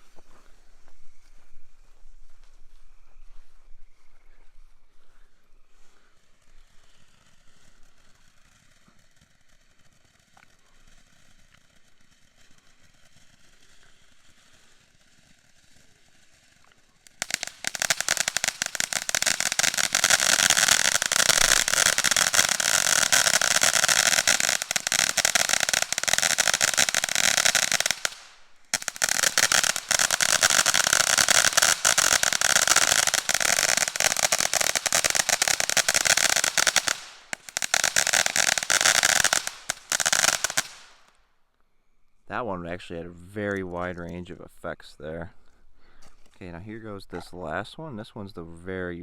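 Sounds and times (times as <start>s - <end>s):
ground firework crackling and hissing: 0.0s - 3.5s, 4.5s - 41.4s
firework pops: 16.6s - 41.1s.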